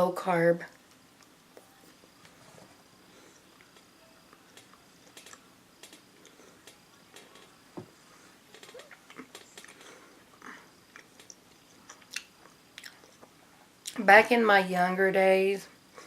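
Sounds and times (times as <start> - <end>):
person chewing food: 8.8 - 14.0.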